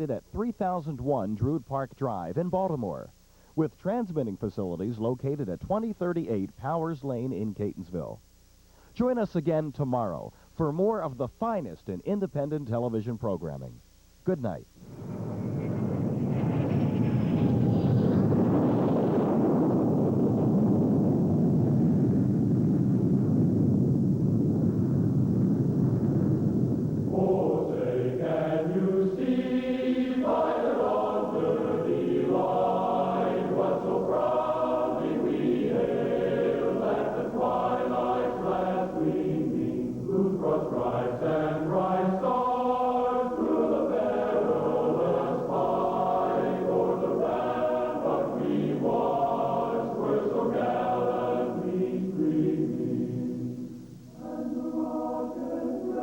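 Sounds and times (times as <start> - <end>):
low rumbling noise: 14.7 - 56.0
choir singing held chords: 27.1 - 56.0.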